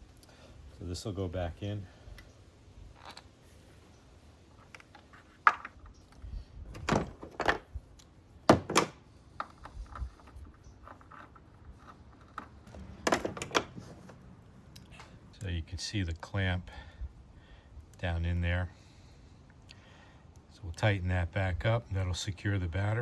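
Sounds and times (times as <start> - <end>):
clicks and rattles: 8.5 - 13.9.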